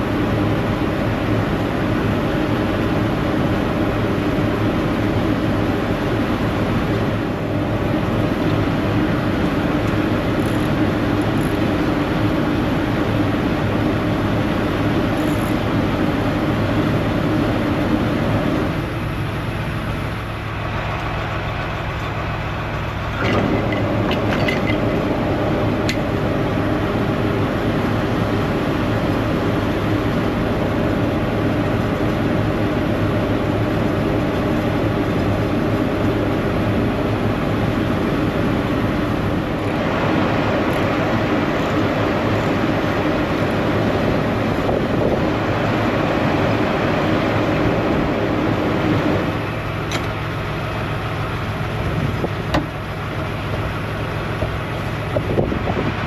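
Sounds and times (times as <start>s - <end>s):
diesel truck engine idling: 11.9s - 24.1s, 24.8s - 56.0s.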